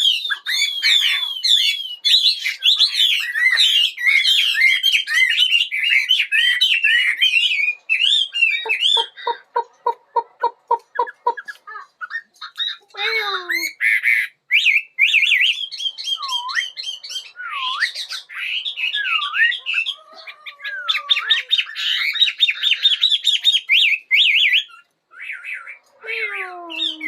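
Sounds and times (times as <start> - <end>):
bird singing whistled song: 0.0 - 9.4, 13.5 - 20.0, 20.8 - 25.8.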